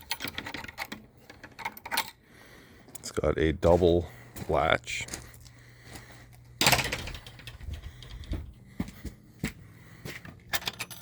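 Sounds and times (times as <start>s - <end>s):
metal gate latch clanking: 6.6s - 7.6s.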